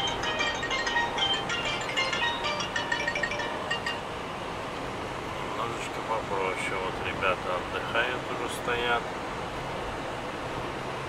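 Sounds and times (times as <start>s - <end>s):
bright plinking melody: 0.0s - 4.4s.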